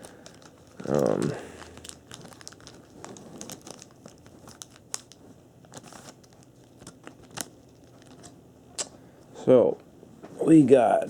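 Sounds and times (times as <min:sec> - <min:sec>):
wrapper crinkling and tearing: 0:00.0 - 0:08.3.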